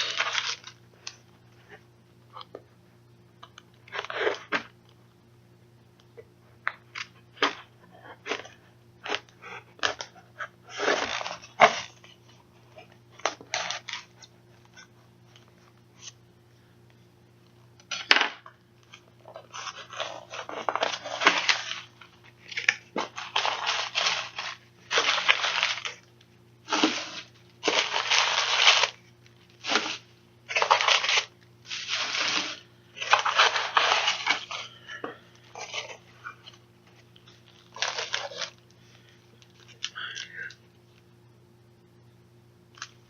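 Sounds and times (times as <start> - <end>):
paper tearing and crumpling: 0.0 - 1.2, 9.8 - 12.1, 12.8 - 14.9, 19.2 - 26.1, 26.7 - 34.8, 35.5 - 36.0, 37.2 - 39.8.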